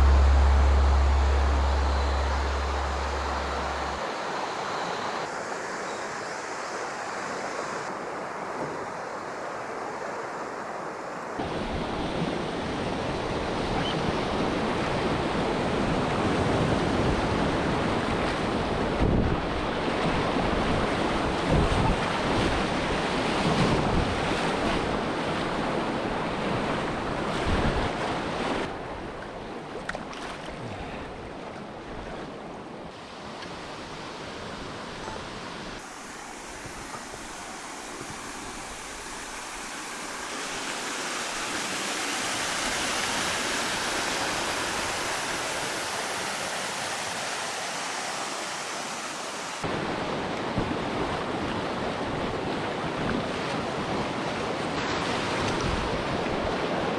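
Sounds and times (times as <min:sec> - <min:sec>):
river rapids rushing: 0:00.0 - 0:05.8, 0:35.7 - 0:49.8.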